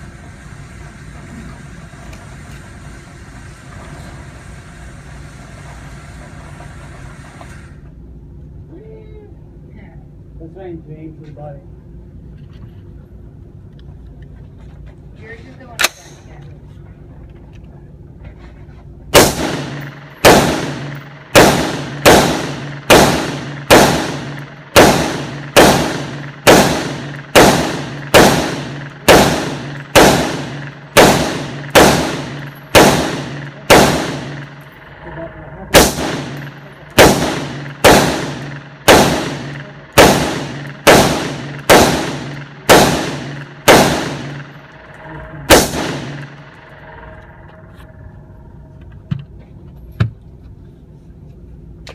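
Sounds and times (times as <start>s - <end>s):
gunshots with echoing tail: 19.1s - 47.7s.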